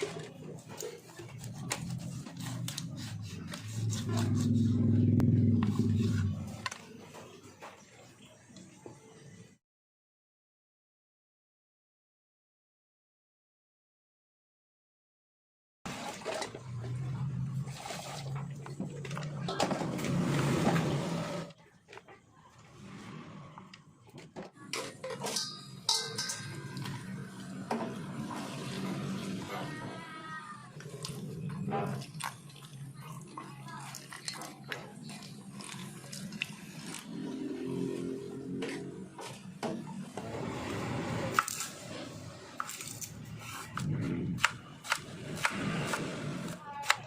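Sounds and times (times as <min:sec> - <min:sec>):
cookware and utensils clinking: 0:15.9 - 0:20.8, 0:23.7 - 0:40.3.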